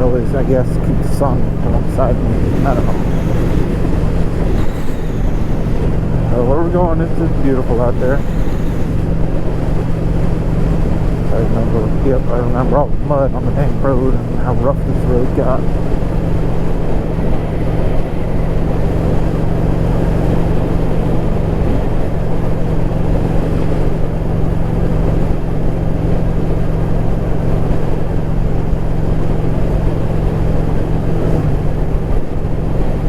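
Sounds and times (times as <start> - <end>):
tyre and road rumble: 0.0 - 23.5
vehicle engine drone: 0.0 - 33.0.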